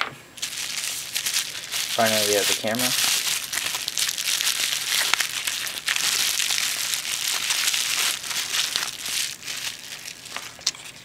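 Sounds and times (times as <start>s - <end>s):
packaging crinkling: 0.4s - 11.0s.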